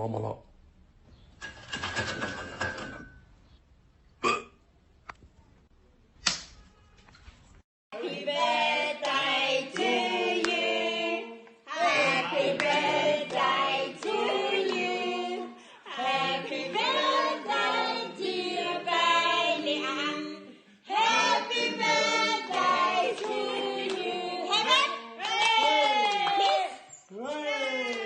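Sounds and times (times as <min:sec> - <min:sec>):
voices singing together: 0:07.9 - 0:25.4.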